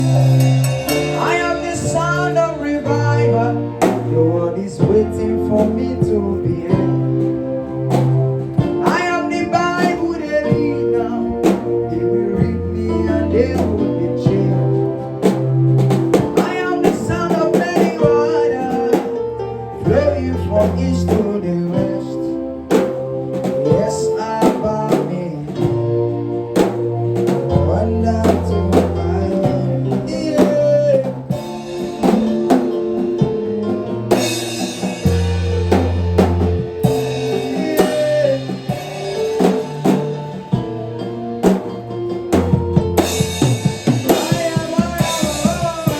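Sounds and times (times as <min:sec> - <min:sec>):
person singing: 0:00.0 - 0:07.5, 0:08.6 - 0:15.0, 0:16.2 - 0:22.5, 0:23.6 - 0:25.9, 0:27.5 - 0:32.5, 0:35.1 - 0:40.7, 0:43.0 - 0:45.9
band playing a song: 0:00.0 - 0:45.9.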